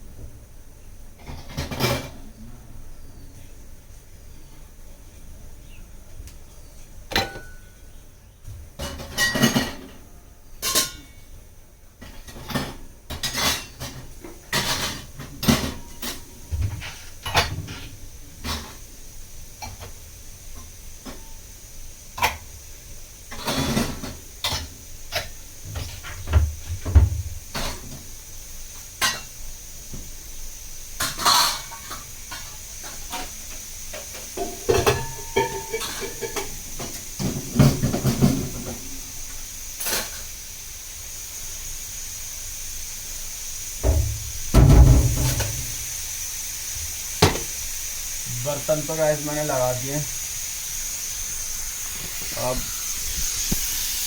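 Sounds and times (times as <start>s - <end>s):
faint high hiss: 0.0s - 54.0s
pots and dishes clanking: 1.2s - 2.3s, 7.1s - 7.8s, 8.7s - 11.4s, 12.0s - 18.9s, 19.6s - 21.4s, 22.2s - 22.5s, 23.3s - 28.1s, 28.9s - 30.1s, 31.0s - 39.1s, 43.8s - 46.0s, 47.2s - 47.6s.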